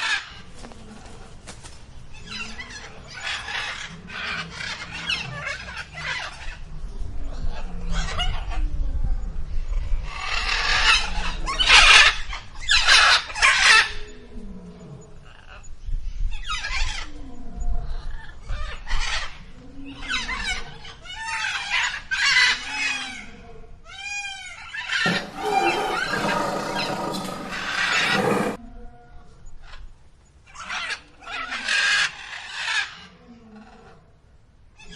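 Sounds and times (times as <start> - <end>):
dense animal sound: 25.0 - 28.6.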